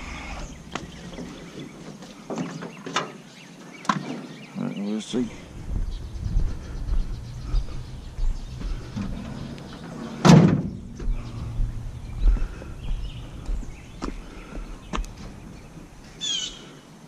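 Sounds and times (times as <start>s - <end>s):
low rumble: 5.2s - 16.2s.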